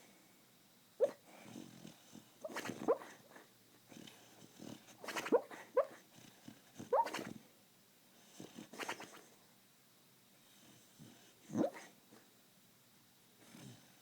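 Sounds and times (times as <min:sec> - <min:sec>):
dog yipping and woofing: 0:05.1 - 0:06.0, 0:06.9 - 0:07.3.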